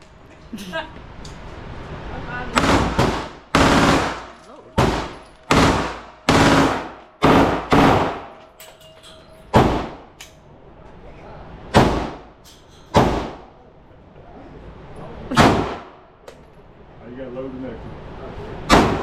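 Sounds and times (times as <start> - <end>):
echoing gunshots: 2.6 - 8.4, 15.4 - 16.0, 18.7 - 19.0.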